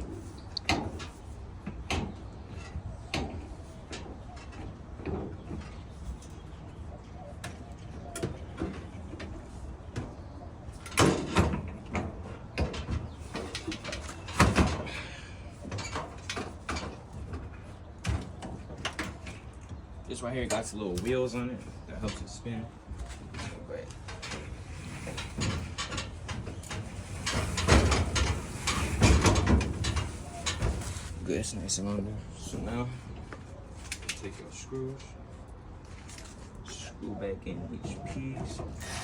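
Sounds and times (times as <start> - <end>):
sheet metal parts clunking: 23.1 - 31.2.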